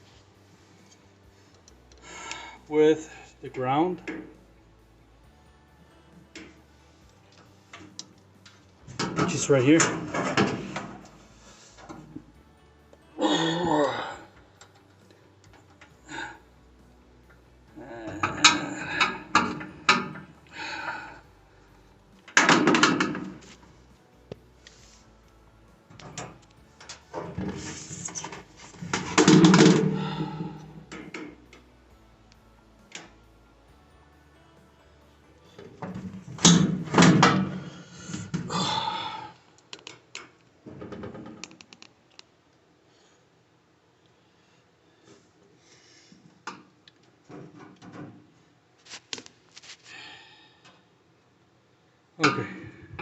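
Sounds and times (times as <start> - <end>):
rustling and clattering of parts: 6.3 - 13.0, 17.2 - 21.2, 22.1 - 31.7, 35.4 - 38.5, 39.6 - 42.3, 45.0 - 49.9.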